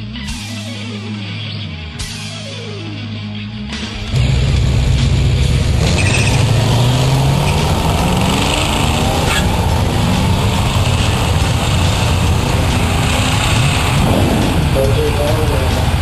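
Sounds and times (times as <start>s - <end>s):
car engine running: 3.7s - 16.0s.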